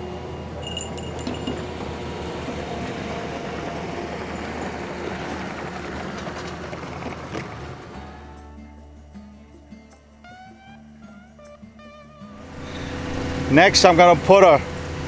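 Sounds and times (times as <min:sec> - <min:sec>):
metallic clinks: 0:00.0 - 0:06.0
skid steer engine running: 0:00.0 - 0:15.0.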